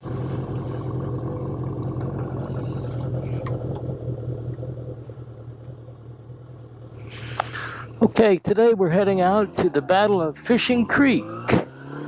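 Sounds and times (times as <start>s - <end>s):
motorcycle engine running: 0.0s - 12.0s
brief click: 7.3s - 7.6s.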